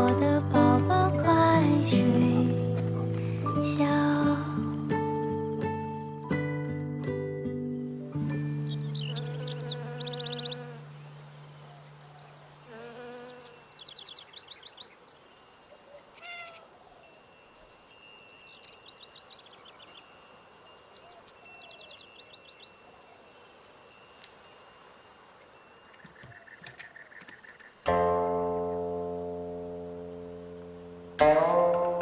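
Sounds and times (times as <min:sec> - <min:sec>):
small birds trilling: 0:01.8 - 0:03.6, 0:08.4 - 0:28.0.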